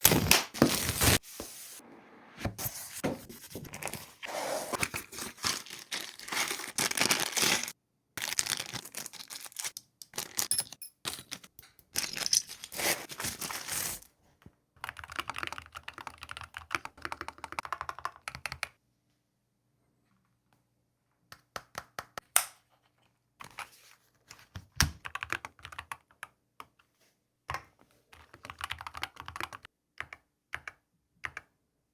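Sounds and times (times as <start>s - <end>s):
mechanical keyboard typing: 14.8s - 18.7s, 25.0s - 26.4s, 28.2s - 31.5s.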